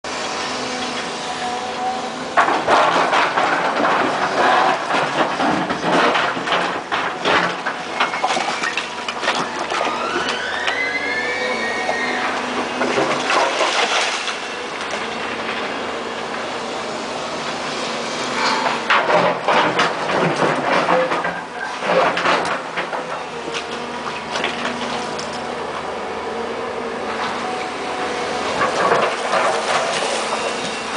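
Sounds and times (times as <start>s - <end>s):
excavator diesel engine: 0.1s - 30.9s
rising and falling whine: 9.8s - 12.4s.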